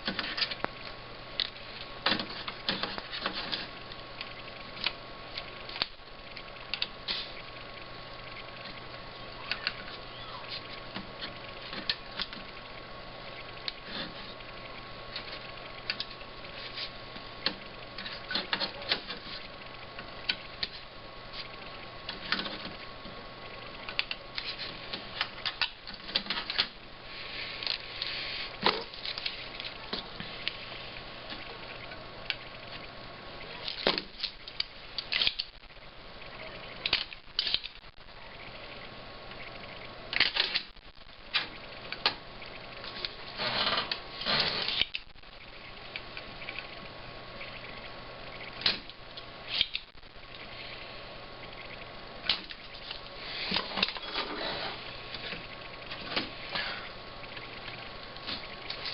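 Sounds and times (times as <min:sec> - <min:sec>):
faint steady hum: 0:00.0 - 0:58.9
hand tools clicking and scraping: 0:01.4 - 0:03.7.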